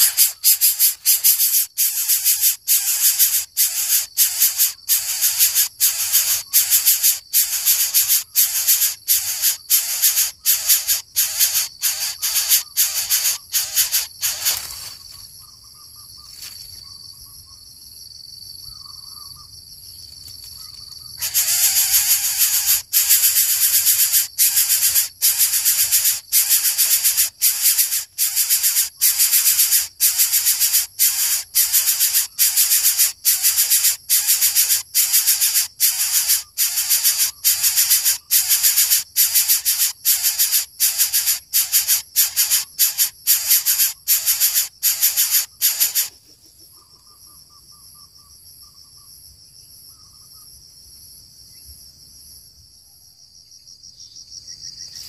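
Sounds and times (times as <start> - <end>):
bird making rasping hiss: 0.0 - 15.1, 21.2 - 46.3.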